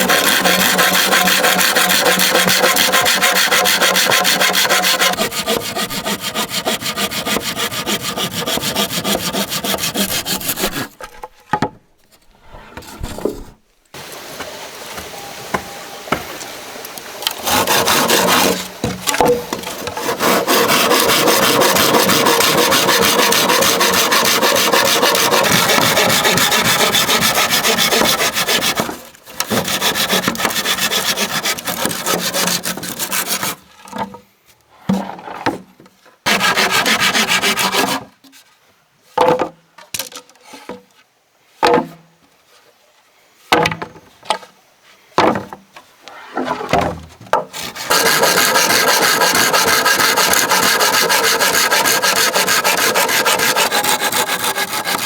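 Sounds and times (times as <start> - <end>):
hand tool rasping bamboo: 0.0 - 11.2, 17.2 - 33.6, 36.3 - 38.0, 47.5 - 55.0
tool strokes and knocks: 0.0 - 11.2, 17.3 - 33.5, 47.4 - 55.0.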